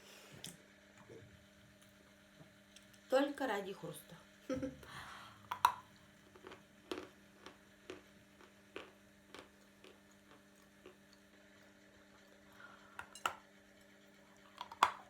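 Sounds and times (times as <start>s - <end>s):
person crunching hard food: 5.6s - 11.4s.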